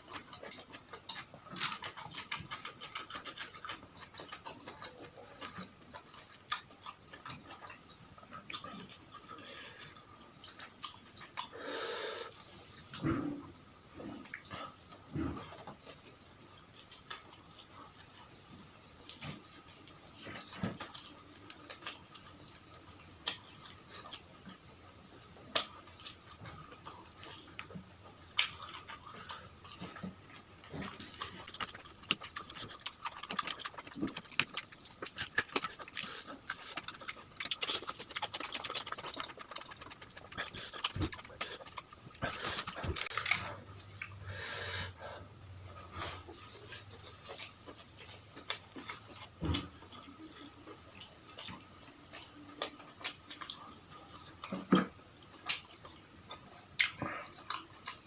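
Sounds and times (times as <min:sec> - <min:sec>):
wet chewing and lip smacking: 0:00.0 - 0:11.6, 0:14.0 - 0:44.2, 0:45.8 - 0:58.0
breathing: 0:09.4 - 0:10.0, 0:11.5 - 0:12.4, 0:44.2 - 0:45.3.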